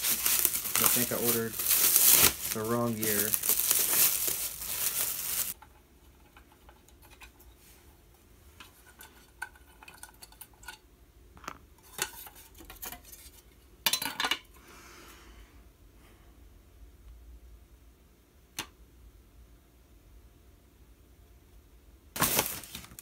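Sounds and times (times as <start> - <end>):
packaging rustle: 0.0 - 5.6, 22.2 - 23.0.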